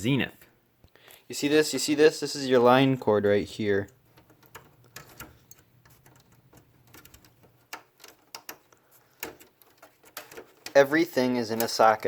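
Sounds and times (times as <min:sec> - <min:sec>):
hands clicking and tapping parts: 0:03.7 - 0:12.0.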